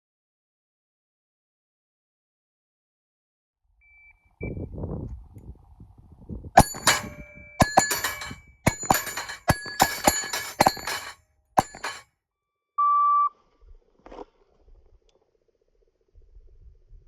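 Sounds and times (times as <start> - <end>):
steel targets ringing: 6.6 - 12.0.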